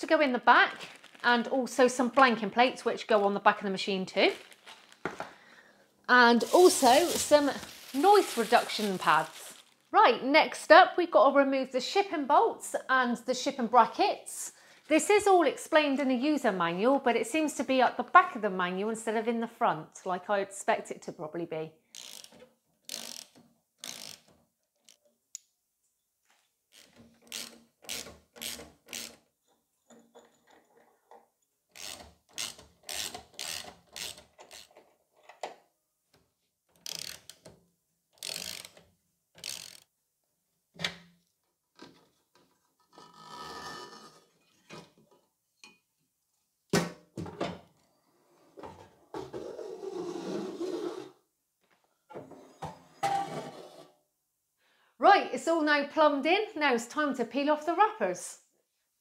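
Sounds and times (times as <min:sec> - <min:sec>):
scraping sounds: 0:06.4 - 0:09.9, 0:53.1 - 0:54.0
ratchet spanner clicking: 0:38.2 - 0:38.8, 0:39.4 - 0:39.8.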